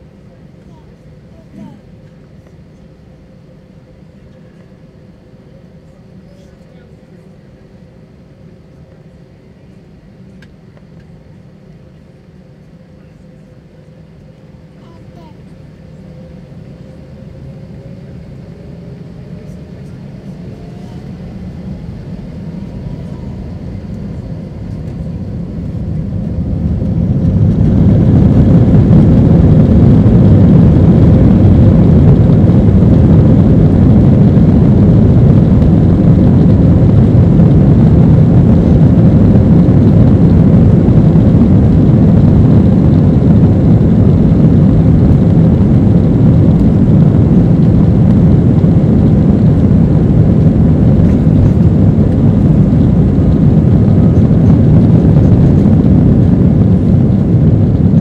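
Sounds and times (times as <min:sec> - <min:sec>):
engine whine: 0:00.0 - 0:58.0
jet engines roaring: 0:15.4 - 0:58.0.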